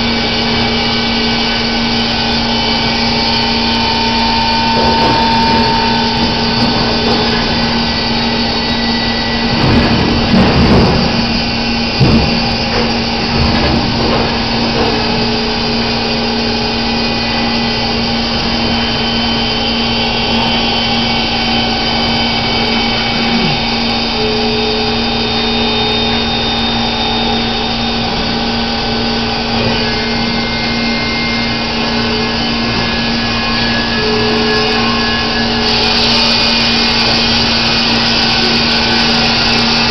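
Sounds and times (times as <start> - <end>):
band sawmill running: 0.0 - 39.9
machine clunks: 3.6 - 16.0.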